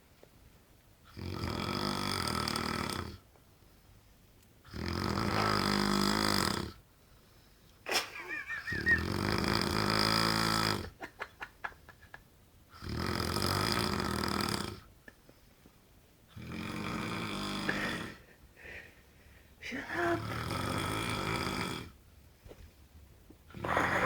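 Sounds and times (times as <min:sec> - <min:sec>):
man snoring loudly: 0:01.1 - 0:03.2, 0:04.7 - 0:06.8, 0:08.7 - 0:11.0, 0:12.8 - 0:14.9, 0:16.4 - 0:18.2, 0:20.2 - 0:22.0.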